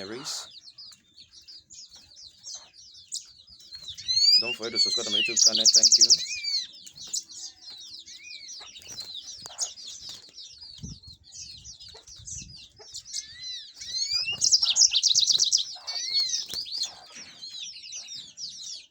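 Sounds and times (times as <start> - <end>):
canaries chirping and singing: 0.0 - 18.9
bird's fast trill: 13.0 - 17.3.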